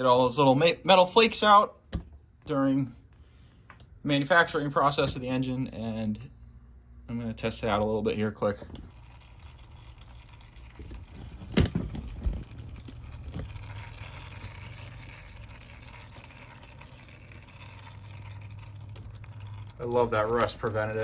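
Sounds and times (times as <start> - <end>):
oil pouring in a stream: 8.9 - 21.0.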